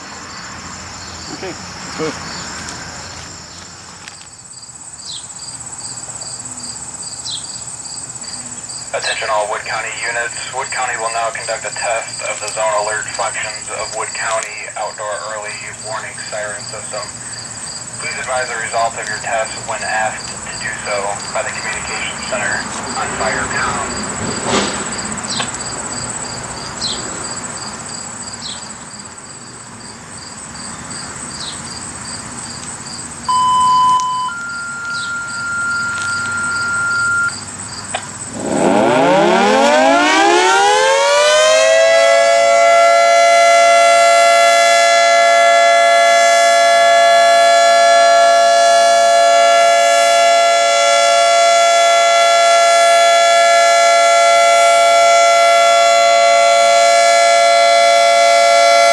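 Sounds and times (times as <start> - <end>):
insects chirping: 0.0 - 40.8
short electronic beeps: 33.3 - 37.4
warning siren winding up: 33.3 - 37.4, 38.2 - 58.9.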